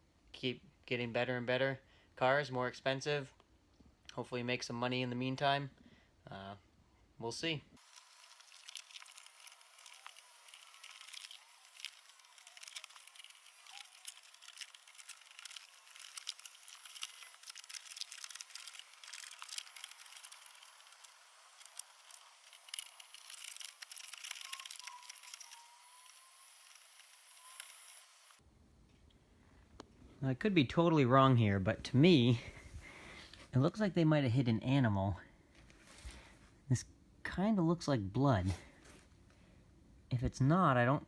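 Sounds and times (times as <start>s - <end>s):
plastic wrap crinkling and tearing: 7.8s - 28.4s.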